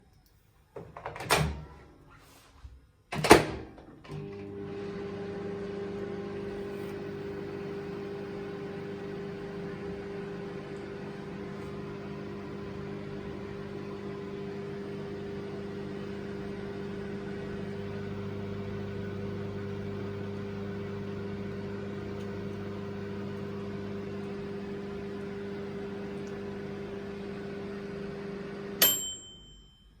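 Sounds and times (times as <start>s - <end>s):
microwave oven humming: 4.0s - 30.0s
microwave click: 6.4s - 29.8s.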